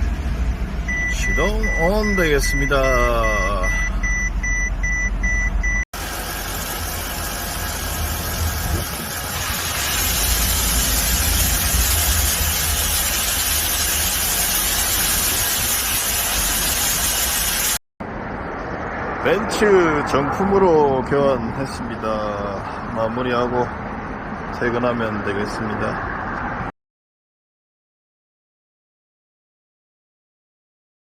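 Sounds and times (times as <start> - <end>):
car engine idling: 0.0 - 17.7
rapid high beeping: 0.9 - 5.8.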